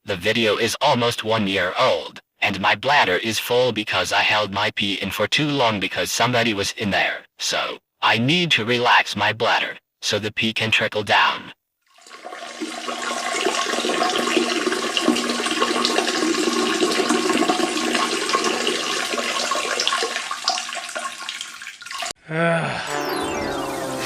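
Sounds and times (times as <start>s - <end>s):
urine splashing into toilet water: 11.9s - 22.2s
sliding pitched sound: 22.8s - 24.0s.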